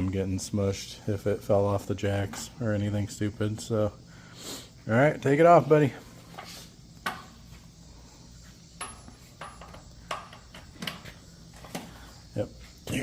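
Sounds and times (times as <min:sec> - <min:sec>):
metallic clinks of socket on lug nuts: 0:08.8 - 0:11.1.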